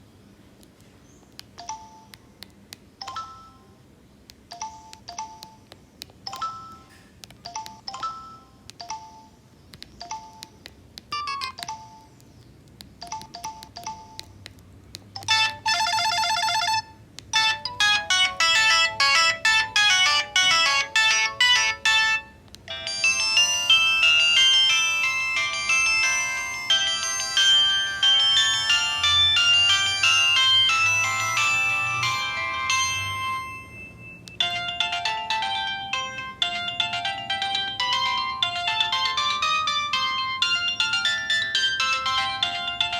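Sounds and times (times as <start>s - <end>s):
polyphonic ringtone melodies: 3.0s - 3.8s, 6.3s - 9.4s, 10.0s - 12.2s, 13.0s - 14.3s, 15.2s - 42.9s
phone ringtone chimes: 6.3s - 9.4s, 11.1s - 12.1s, 15.2s - 42.9s.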